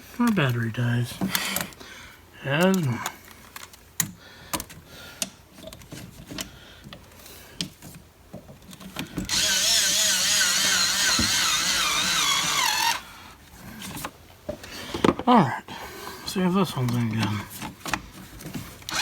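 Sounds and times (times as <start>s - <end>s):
cordless power tool whining: 9.2s - 13.4s.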